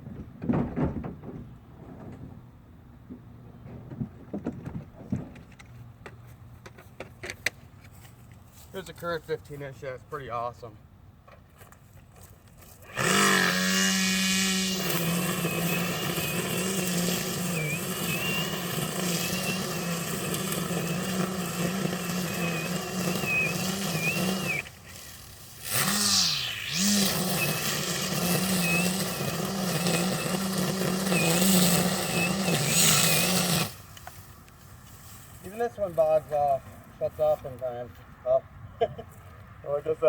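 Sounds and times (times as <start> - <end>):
string trimmer cutting grass: 12.6 - 36.6.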